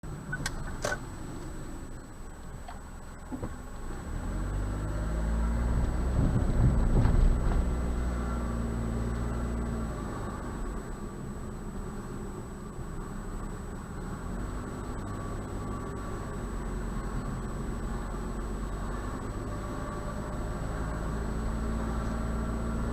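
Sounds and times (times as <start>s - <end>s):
car engine and road noise: 0.0s - 22.9s.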